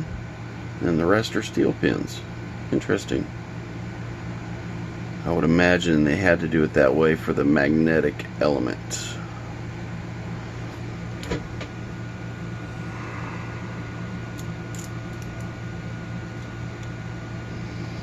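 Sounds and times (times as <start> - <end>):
low room hum: 0.0 - 18.0
small metal parts clicking: 14.4 - 15.5.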